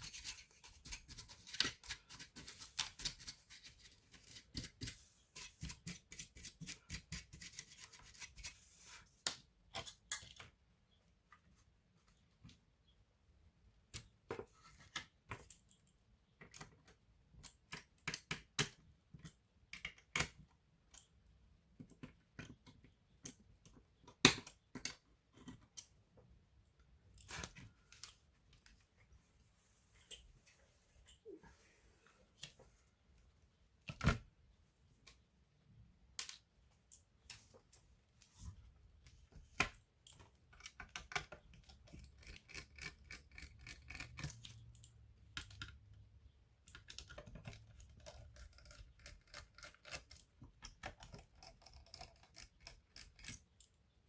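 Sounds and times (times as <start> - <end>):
small tools clicking and tapping: 39.1 - 46.0, 46.6 - 53.8
fast scratching and clicking: 47.0 - 50.3.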